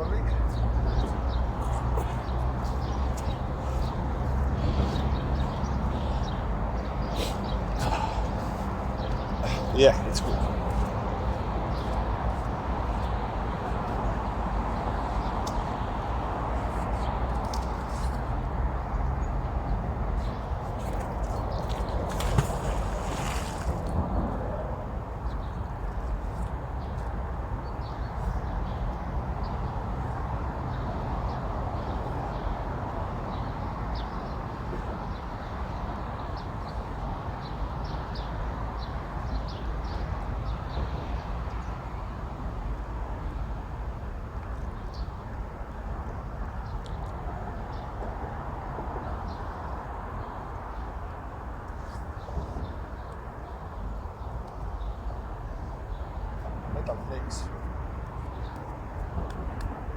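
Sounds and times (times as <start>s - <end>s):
small birds chirping: 0.0s - 15.9s.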